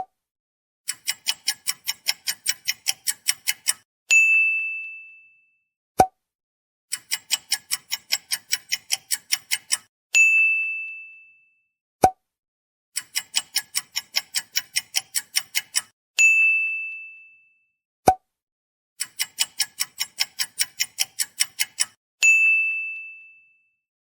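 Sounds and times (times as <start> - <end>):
rapid clock ticking: 0.9 - 3.8, 6.9 - 9.9, 13.0 - 15.9, 19.0 - 22.0
bright bell ding: 4.1 - 5.5, 10.2 - 11.6, 16.2 - 17.6, 22.2 - 23.7.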